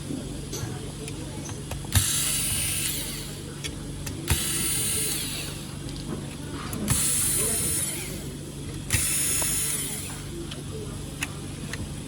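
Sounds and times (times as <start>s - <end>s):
small power tool whirring: 1.9s - 3.4s, 4.0s - 5.8s, 6.9s - 10.3s
power tool click: 4.0s - 5.6s, 8.9s - 10.2s.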